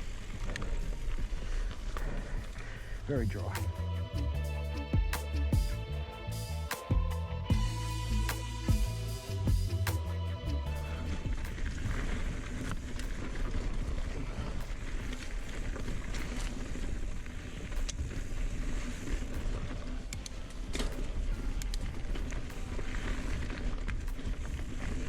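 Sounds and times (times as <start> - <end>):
wind rumbling on microphone: 0.0 - 25.0
bike clicking and rattling: 11.4 - 25.0.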